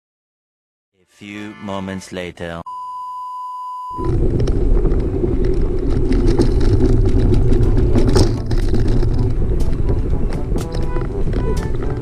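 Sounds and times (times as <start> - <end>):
electronic beep tone: 2.6 - 4.1
low rumbling noise: 4.0 - 12.0.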